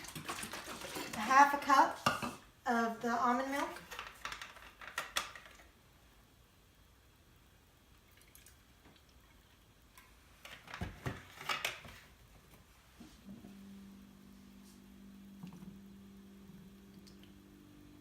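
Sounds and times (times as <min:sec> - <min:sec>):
low steady hum: 0:12.0 - 0:18.0.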